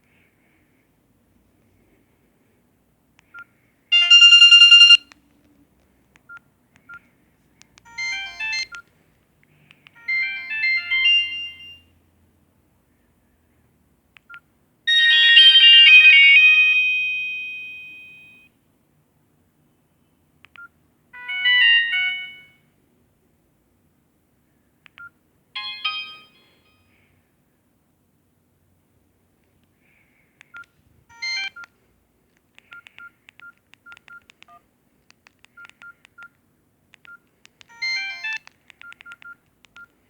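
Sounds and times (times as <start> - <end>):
mobile phone ringtone melodies: 3.9 - 5.1, 7.9 - 8.8, 10.0 - 11.9, 14.9 - 18.5, 21.2 - 22.6, 25.6 - 27.0, 31.1 - 31.7, 37.7 - 39.3.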